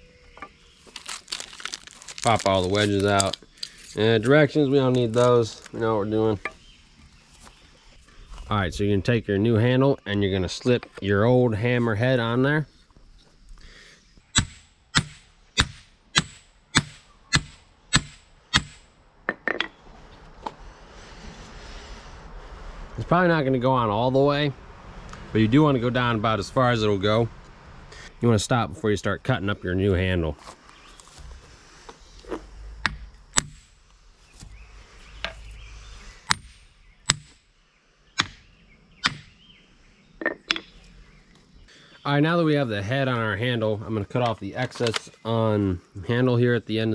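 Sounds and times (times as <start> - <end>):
metallic ring: 14.4 - 18.9
sledgehammer knocking on wood: 14.4 - 18.9, 32.9 - 33.6, 36.3 - 37.3, 38.2 - 39.3.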